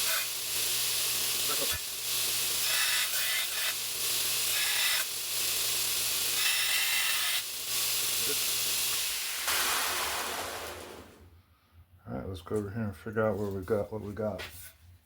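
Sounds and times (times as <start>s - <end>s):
belt grinder grinding steel: 0.0s - 10.6s
grinder motor humming: 0.0s - 10.9s.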